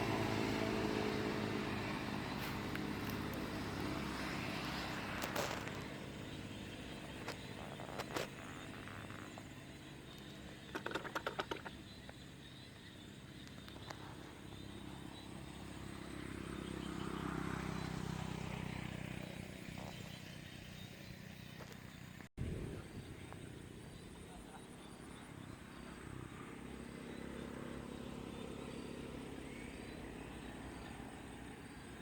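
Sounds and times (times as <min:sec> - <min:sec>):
engine humming: 0:00.0 - 0:32.0
quick clicks: 0:10.7 - 0:11.8.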